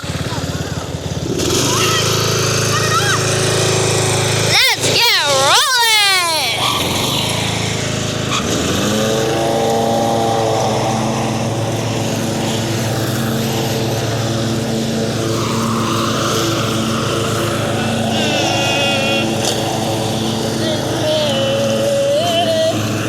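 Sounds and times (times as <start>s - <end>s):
lawn mower engine running: 0.0s - 23.0s.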